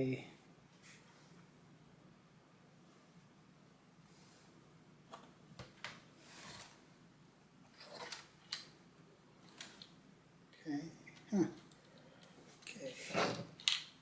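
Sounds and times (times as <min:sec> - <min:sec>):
plastic toy bricks clicking: 0:13.6 - 0:14.0.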